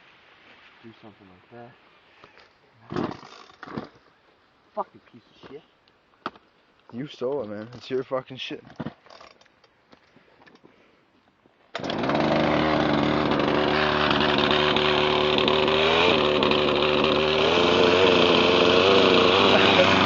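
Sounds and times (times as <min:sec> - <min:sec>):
chainsaw engine running: 0:11.8 - 0:20.0.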